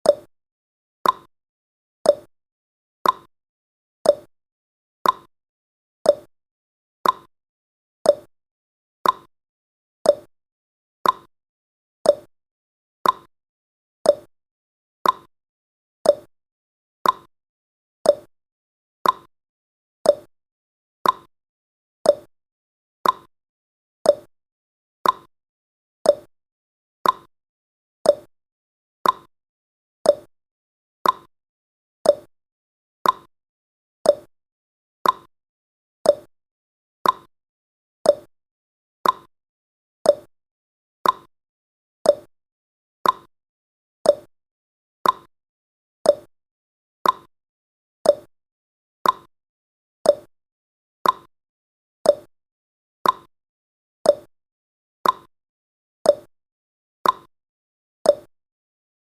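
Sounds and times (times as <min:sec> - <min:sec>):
clock ticking: 0:39.0 - 0:39.3, 0:43.0 - 0:43.3, 0:45.0 - 0:45.3.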